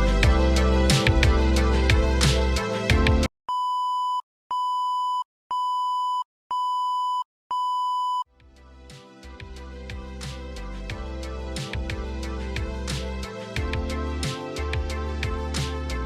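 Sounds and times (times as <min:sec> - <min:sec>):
music: 0:00.0 - 0:03.3, 0:08.3 - 0:16.0.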